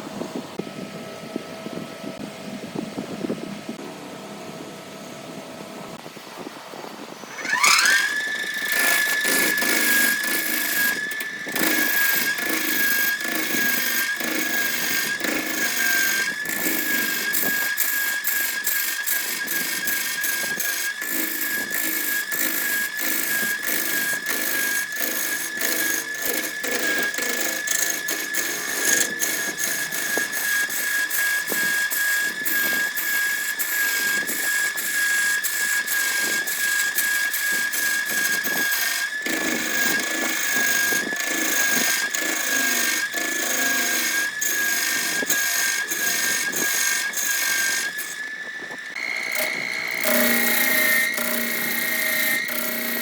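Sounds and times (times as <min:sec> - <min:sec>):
power tool motor whining: 0:07.2 - 0:53.0.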